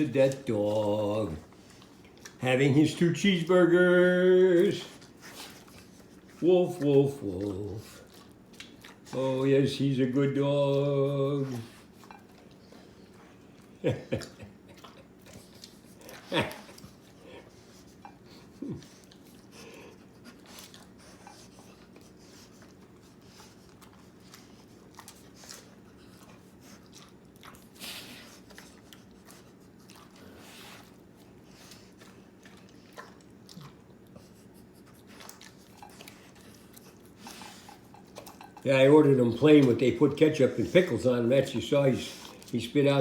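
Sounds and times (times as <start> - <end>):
dog chewing and smacking: 0.0 - 43.0.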